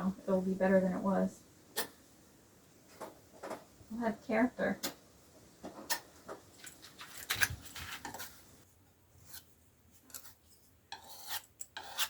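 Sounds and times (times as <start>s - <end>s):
wood filler scraping strokes: 9.2s - 12.0s.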